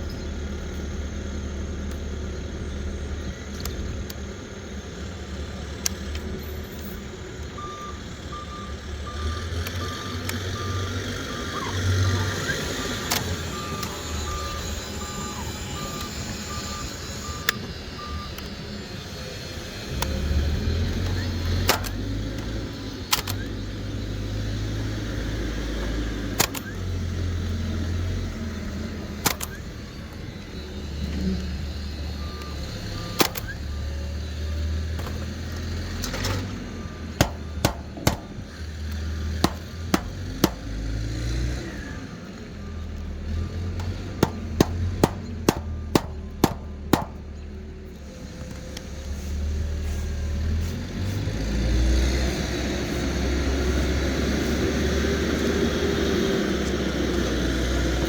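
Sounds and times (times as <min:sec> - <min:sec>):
reversing beeper: 0:07.6 - 0:19.1, 0:30.5 - 0:47.4
hand tools knocking on roof: 0:43.8 - 0:47.2.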